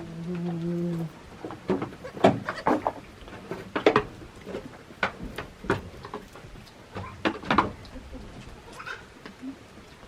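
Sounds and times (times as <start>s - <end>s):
irregular knocks and clatters: 1.4s - 7.8s.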